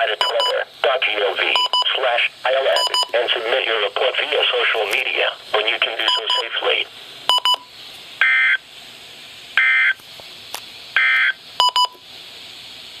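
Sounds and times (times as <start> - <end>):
sharp electronic beeps: 2.8 - 3.2.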